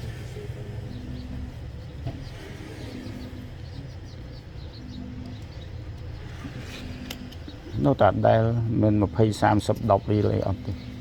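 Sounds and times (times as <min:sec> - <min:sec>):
dove cooing: 0:00.0 - 0:07.8
faint high bird chirps: 0:00.0 - 0:11.0
steady low hum: 0:00.0 - 0:11.0.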